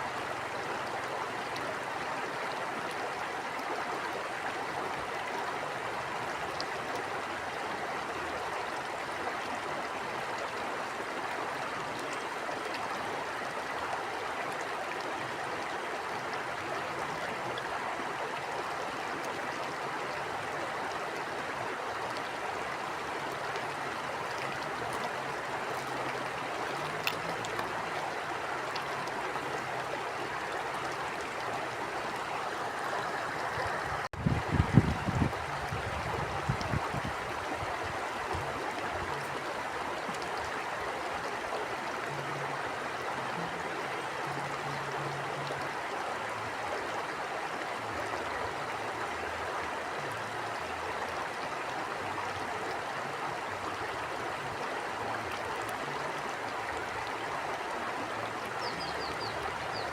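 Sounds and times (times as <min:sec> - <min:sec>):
stream flowing over rocks: 0:00.0 - 0:59.9
faint splashing ticks: 0:24.3 - 0:29.2.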